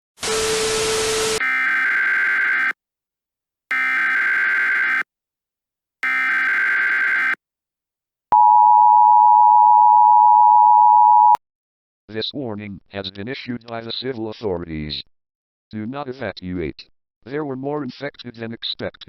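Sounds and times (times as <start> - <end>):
two-tone attention signal: 8.4 - 11.4.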